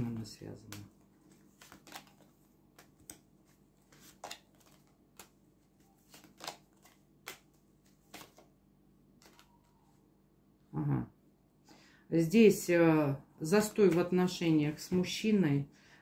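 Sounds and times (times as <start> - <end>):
cards being shuffled: 0.0 - 9.8.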